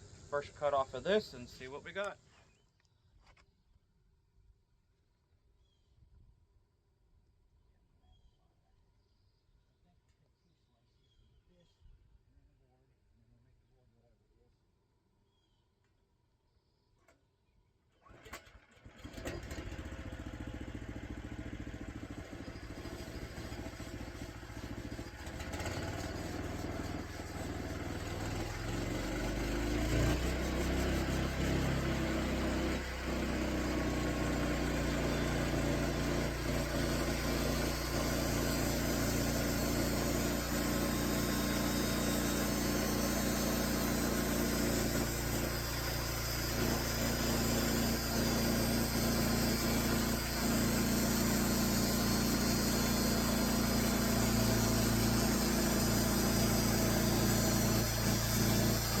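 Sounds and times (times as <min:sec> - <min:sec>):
sawmill engine revving: 0:00.0 - 0:02.1, 0:18.1 - 0:59.0.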